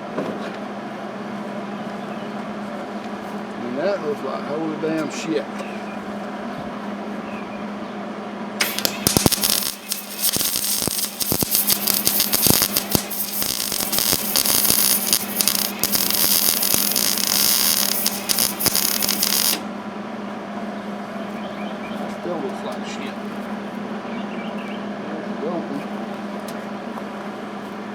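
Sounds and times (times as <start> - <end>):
welding arc crackling: 8.6 - 19.7
welding machine hum: 8.6 - 19.8.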